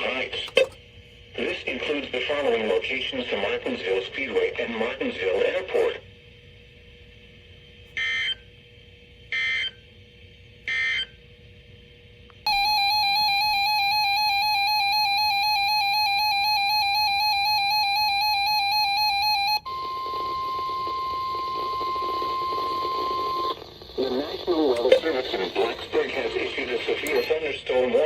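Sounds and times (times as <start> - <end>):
two-tone attention signal: 12.5 - 23.6.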